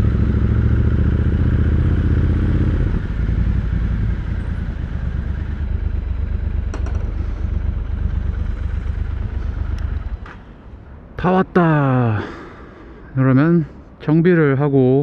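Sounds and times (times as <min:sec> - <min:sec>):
motorcycle engine running: 0:00.0 - 0:10.8.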